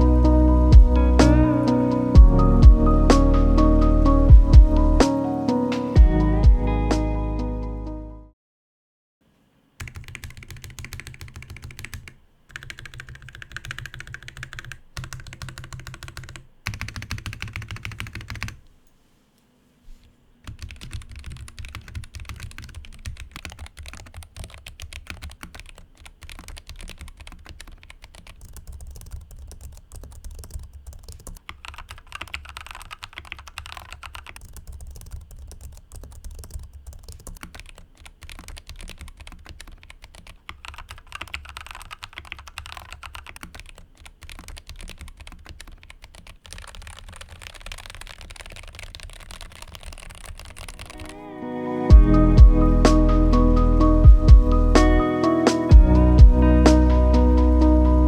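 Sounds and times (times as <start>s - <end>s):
fast typing on mechanical keyboard: 9.8s - 18.6s, 20.5s - 51.2s.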